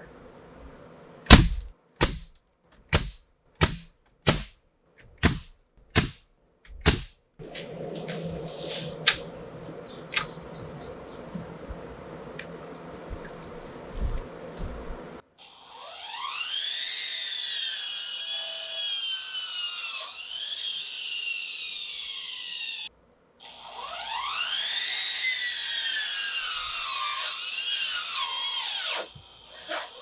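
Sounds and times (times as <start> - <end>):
hammer striking: 1.3 - 4.6, 5.2 - 7.1
steady background hiss: 6.9 - 15.2.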